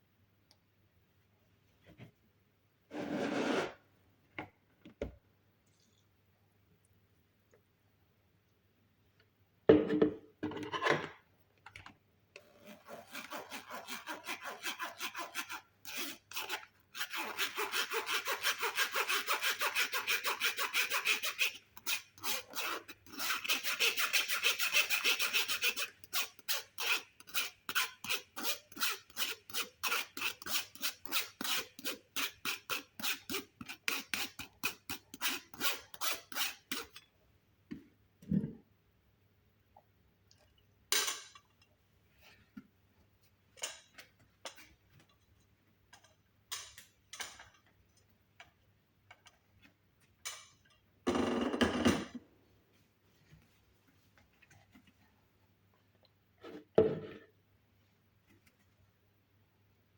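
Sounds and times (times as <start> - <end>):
kitchen utensil scraping: 2.9 - 3.8.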